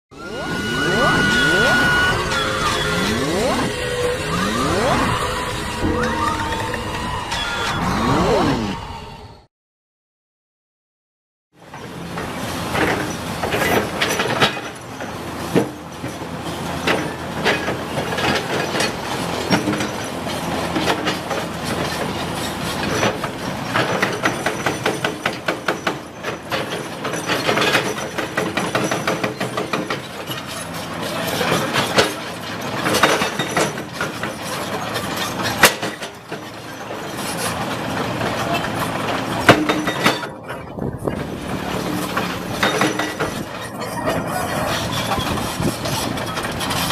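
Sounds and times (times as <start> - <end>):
excavator running: 0.1 - 9.5, 11.6 - 46.9
metal and rock clanking: 23.8 - 46.9.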